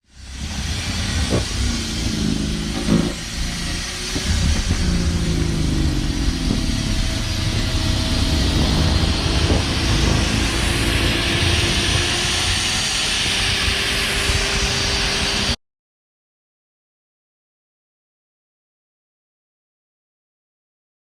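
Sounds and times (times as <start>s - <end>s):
snow-clearing machine engine: 0.0s - 15.6s.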